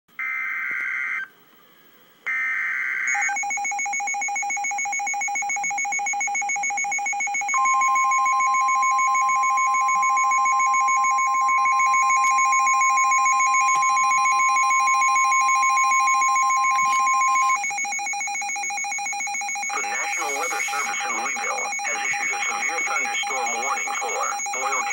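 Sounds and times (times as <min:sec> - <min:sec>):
pulsing two-pitch alarm beep: 0:03.1 - 0:24.9
steady single-pitched warning tone: 0:03.2 - 0:24.9
screeching digital header bursts: 0:19.5 - 0:24.9.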